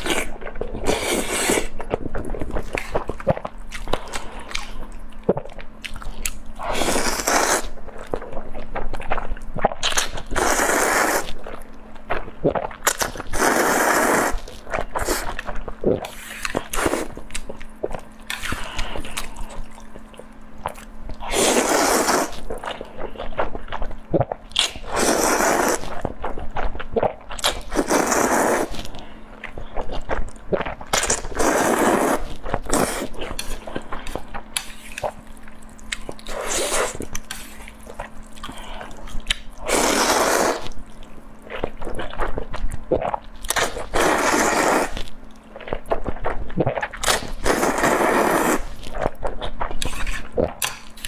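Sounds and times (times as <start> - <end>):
person chewing: 0.0 - 51.0.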